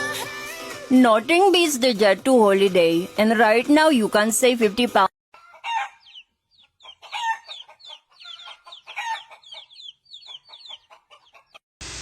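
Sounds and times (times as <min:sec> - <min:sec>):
chickens clucking: 0:05.4 - 0:11.6.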